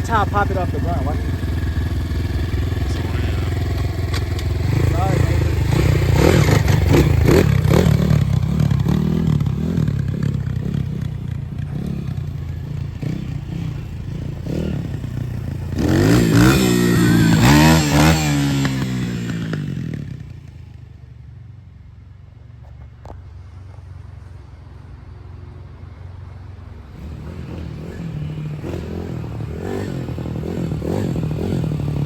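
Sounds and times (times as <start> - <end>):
dirt bike engine revving: 0.0 - 20.4, 26.9 - 32.0.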